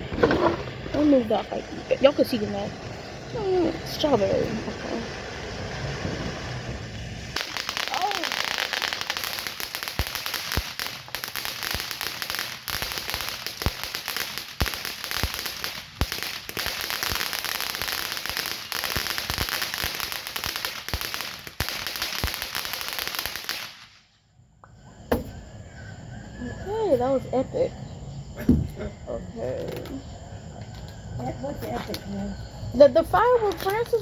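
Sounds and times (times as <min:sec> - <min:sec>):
firework pops: 0:00.0 - 0:24.1, 0:28.4 - 0:28.8, 0:33.3 - 0:34.0
firework crackling hiss: 0:00.0 - 0:24.2, 0:29.6 - 0:34.0.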